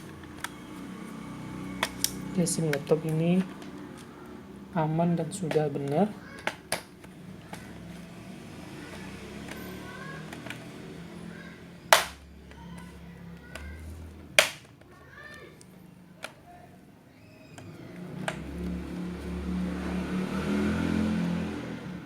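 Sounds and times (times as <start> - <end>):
plastic casing snapping into place: 14.4 - 14.7.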